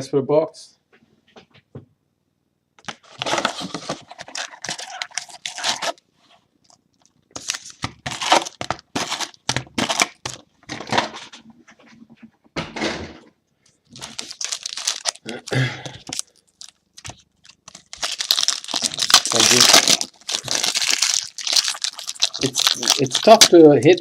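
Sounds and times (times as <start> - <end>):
packaging tearing and crinkling: 2.8 - 6.0, 6.6 - 10.4, 13.9 - 24.0.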